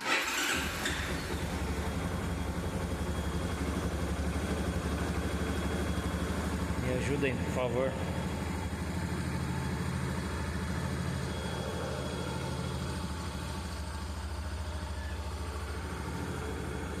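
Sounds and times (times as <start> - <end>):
motorcycle engine idling: 0.3 - 17.0
faint high-pitched whistle: 14.8 - 15.4.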